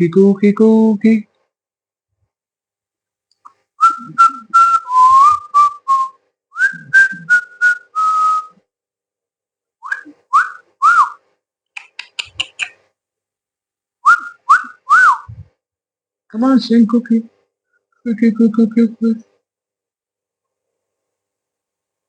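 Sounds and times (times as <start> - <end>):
person whistling short notes: 3.8 - 8.6, 9.8 - 11.2, 14.0 - 15.5
bird chirps: 11.8 - 12.8.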